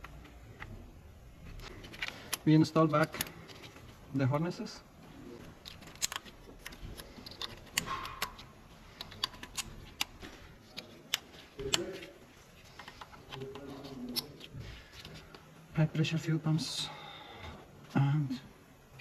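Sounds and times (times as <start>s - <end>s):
plastic connectors clicking: 5.6s - 12.1s.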